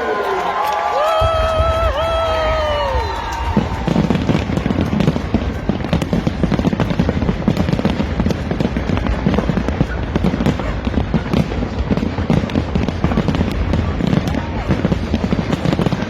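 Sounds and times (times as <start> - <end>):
fireworks crackling pops: 0.0 - 16.0
fireworks booms: 1.0 - 16.0.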